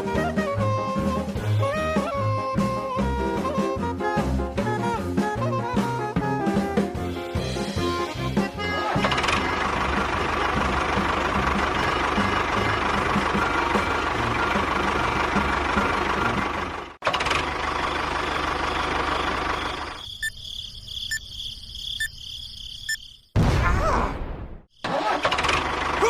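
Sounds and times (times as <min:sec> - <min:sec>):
engine chugging: 0:07.6 - 0:20.2, 0:24.8 - 0:26.0.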